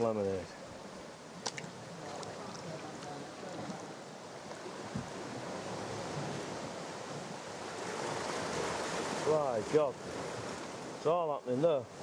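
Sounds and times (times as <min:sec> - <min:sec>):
dull low thump: 0:04.9 - 0:05.2.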